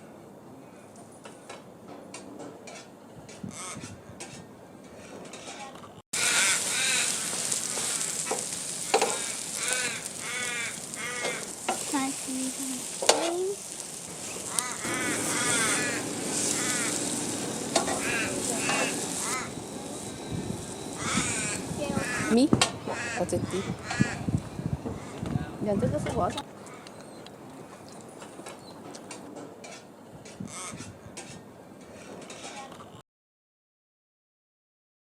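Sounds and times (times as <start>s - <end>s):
loud sizzling hiss: 6.2s - 26.4s.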